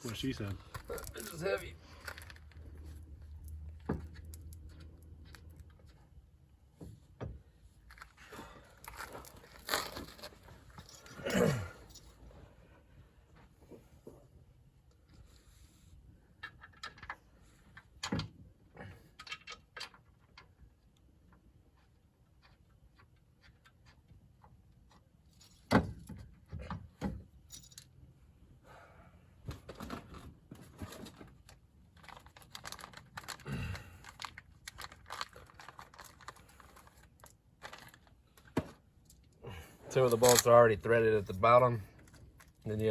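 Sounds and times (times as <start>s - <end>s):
metallic clinks of bolts and tools: 27.5s - 27.9s, 40.0s - 41.4s.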